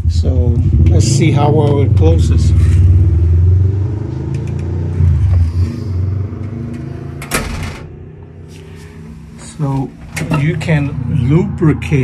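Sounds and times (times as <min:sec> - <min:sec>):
vehicle engine running: 0:00.0 - 0:12.0
storm door closing with clunk: 0:06.5 - 0:07.9, 0:10.0 - 0:10.8.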